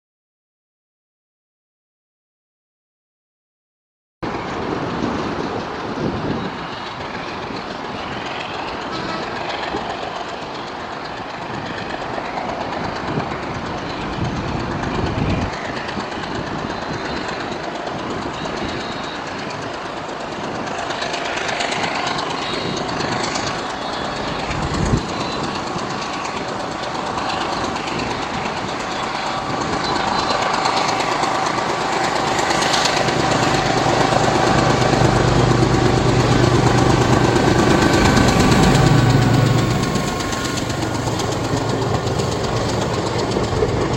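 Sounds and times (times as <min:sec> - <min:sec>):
diesel locomotive engine: 0:04.2 - 0:43.9
train wheels on rails: 0:04.3 - 0:43.9
deep engine drone: 0:22.2 - 0:43.9.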